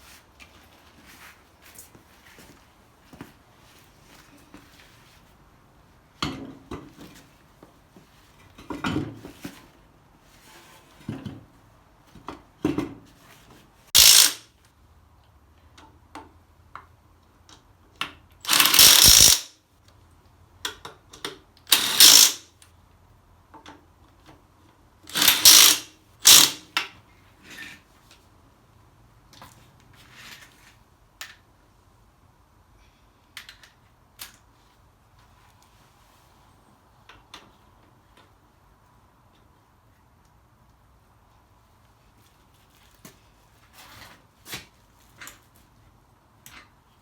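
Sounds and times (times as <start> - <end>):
impact wrench rattling bursts: 14.0 - 14.5, 18.4 - 19.5, 21.7 - 22.5, 25.1 - 26.7.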